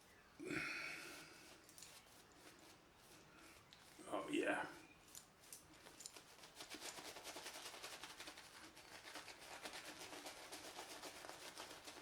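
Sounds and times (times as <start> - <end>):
shaving brush swishing lather: 6.2 - 12.0.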